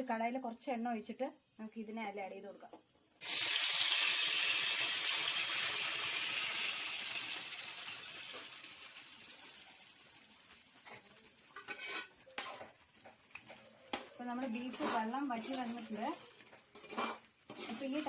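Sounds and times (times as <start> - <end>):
meat sizzling in hot oil: 3.2 - 13.3.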